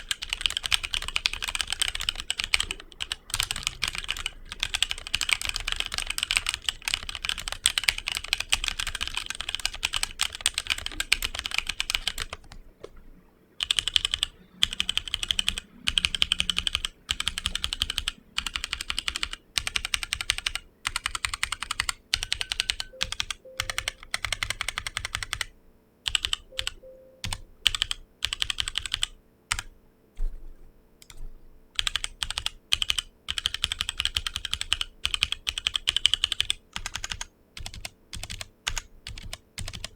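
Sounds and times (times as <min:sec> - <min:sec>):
mechanical keyboard typing: 0:00.0 - 0:12.7, 0:13.6 - 0:29.7, 0:31.0 - 0:39.9.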